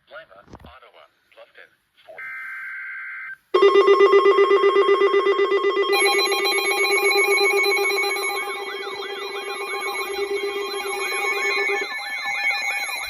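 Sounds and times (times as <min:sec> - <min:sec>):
higher beeping tones: 0:03.6 - 0:13.0
pulsing buzzy alarm beep: 0:03.6 - 0:13.0
warbling siren-like tone: 0:03.6 - 0:13.0.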